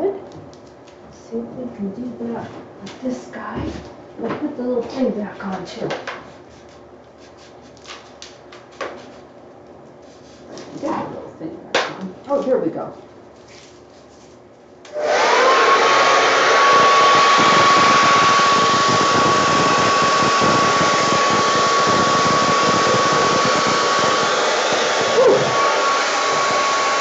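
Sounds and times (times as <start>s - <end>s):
hair dryer blowing: 14.9s - 27.0s.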